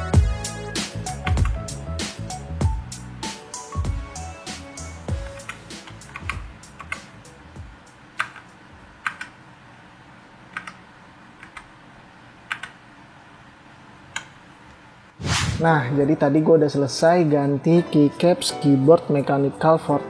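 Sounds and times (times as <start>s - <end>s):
keyboard keys clacking: 1.1s - 1.7s
faint background music: 15.4s - 20.0s.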